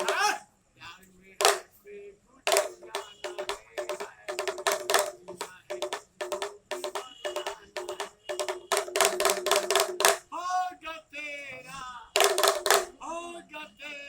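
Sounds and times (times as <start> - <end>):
hand drum rolls: 0.0 - 0.3, 1.4 - 1.7, 2.5 - 10.2, 12.2 - 13.0
man calling out: 0.0 - 0.4.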